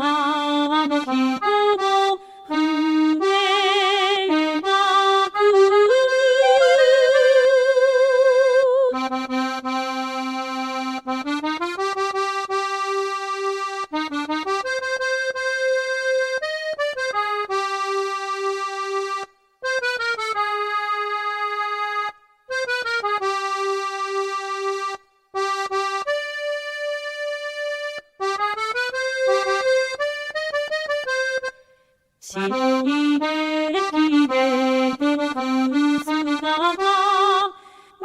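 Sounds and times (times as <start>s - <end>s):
synthesized singing voice: 0.0s - 9.5s, 32.2s - 37.6s
accordion melody: 0.0s - 38.0s.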